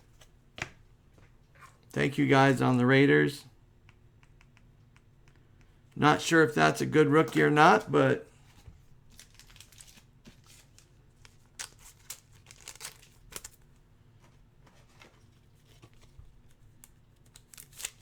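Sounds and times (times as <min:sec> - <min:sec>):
cards and plastic rustling: 0:06.0 - 0:18.0.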